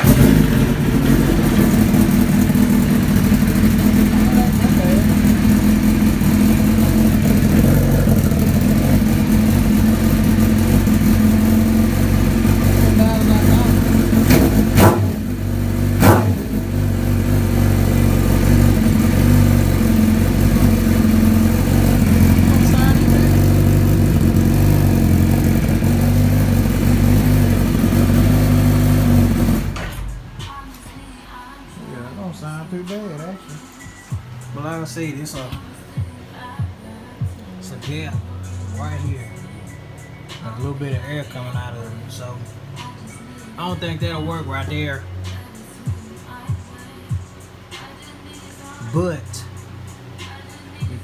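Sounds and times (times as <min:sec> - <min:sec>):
motorcycle engine idling loudly: 0:00.0 - 0:30.0.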